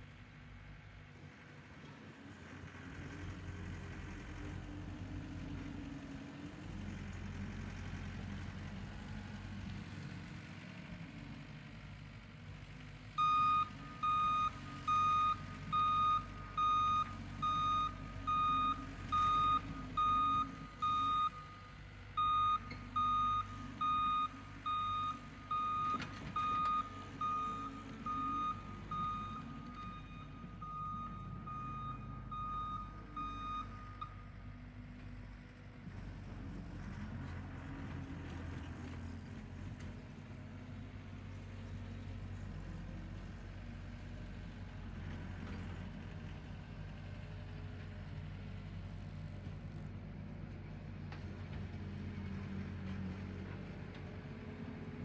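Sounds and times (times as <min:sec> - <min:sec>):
backup alarm beeping: 0:13.2 - 0:21.5.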